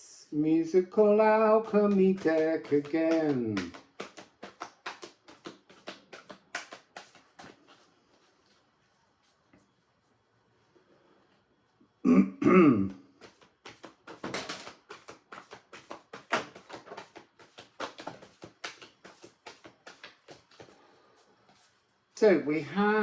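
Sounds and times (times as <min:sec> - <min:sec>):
cards being shuffled by hand: 0:01.6 - 0:08.7, 0:13.1 - 0:21.8
person clearing throat: 0:12.0 - 0:13.0.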